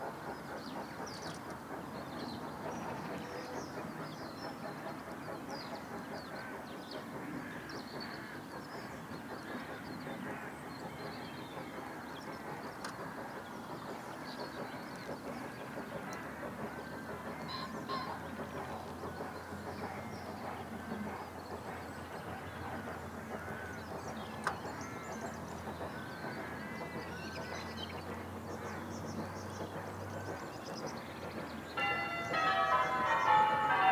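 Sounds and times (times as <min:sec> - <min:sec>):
birds chirping: 0:17.0 - 0:33.9
steady background din: 0:31.7 - 0:33.9.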